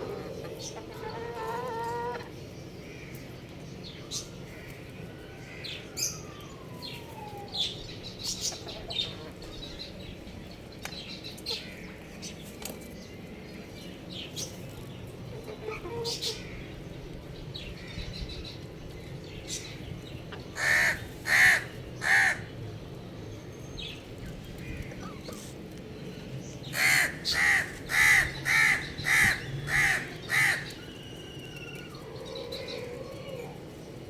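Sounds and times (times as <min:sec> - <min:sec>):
crow cawing: 0:20.6 - 0:22.5, 0:26.8 - 0:30.8.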